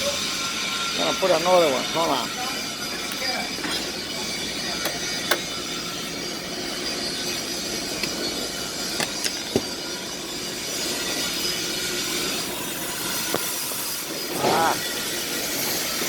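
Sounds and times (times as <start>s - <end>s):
welding arc crackling hiss: 0.0s - 16.0s
sharp welding pops: 13.0s - 14.5s.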